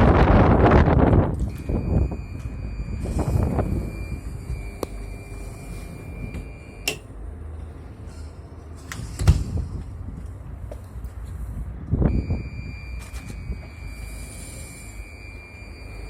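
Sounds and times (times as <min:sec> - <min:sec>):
low steady rumble: 0:00.0 - 0:16.0
electronic lock click: 0:06.2 - 0:07.1.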